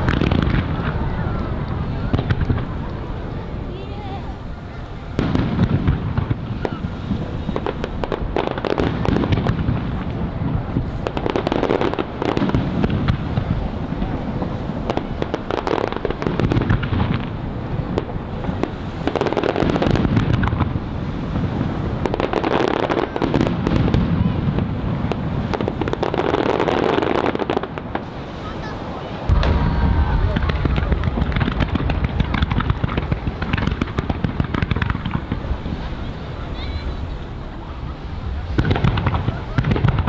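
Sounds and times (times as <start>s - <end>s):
fireworks booming and crackling: 0.0s - 40.0s.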